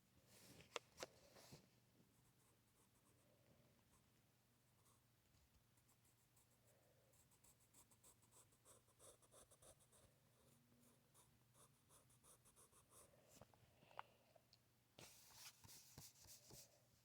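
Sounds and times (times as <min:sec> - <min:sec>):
pencil scratching on paper: 0:07.4 - 0:13.1.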